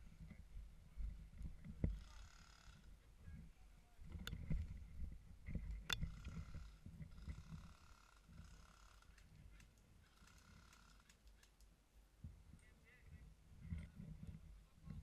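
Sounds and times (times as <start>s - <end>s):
sharp clicks: 9.1s - 11.7s.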